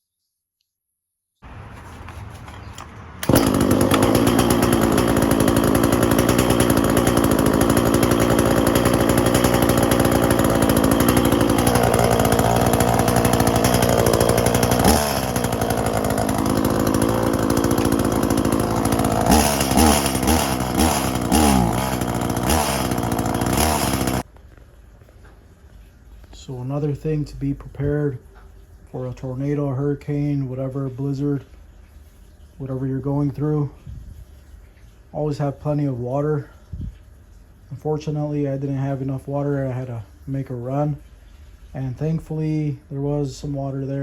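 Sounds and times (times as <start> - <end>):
small petrol engine revving: 2.4 - 24.3.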